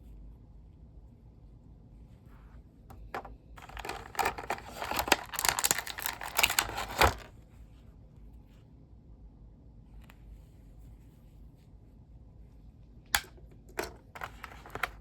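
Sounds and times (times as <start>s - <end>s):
packaging crinkling and tearing: 3.6s - 7.3s.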